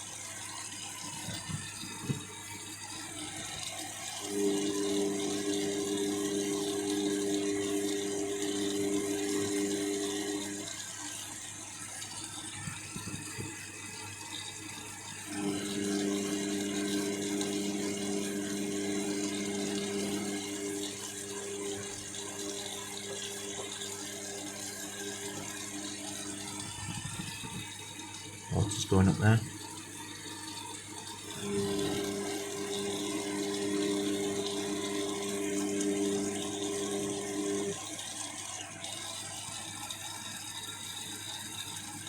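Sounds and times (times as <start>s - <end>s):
water running into washing machine: 0.0s - 42.0s
drum motor humming: 1.1s - 10.8s, 15.3s - 38.3s.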